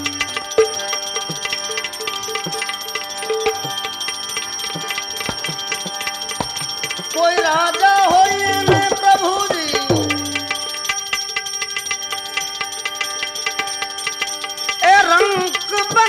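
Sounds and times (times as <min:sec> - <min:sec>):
melody with sliding notes: 0:00.0 - 0:00.9, 0:08.2 - 0:10.7
ringing drone tones: 0:00.0 - 0:16.0
tabla rhythm: 0:00.0 - 0:16.0.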